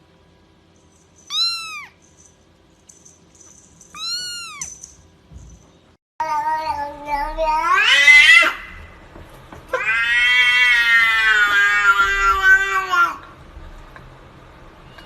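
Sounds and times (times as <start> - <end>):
cat meowing: 1.3 - 2.0, 3.9 - 4.8, 6.2 - 8.8, 9.7 - 13.2.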